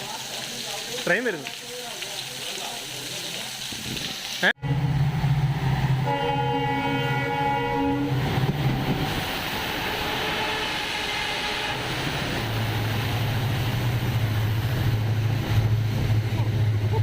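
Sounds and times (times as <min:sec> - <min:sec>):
low engine drone: 0:04.6 - 0:17.0
train running on track: 0:04.6 - 0:17.0
train horn: 0:06.0 - 0:08.5, 0:09.8 - 0:11.9.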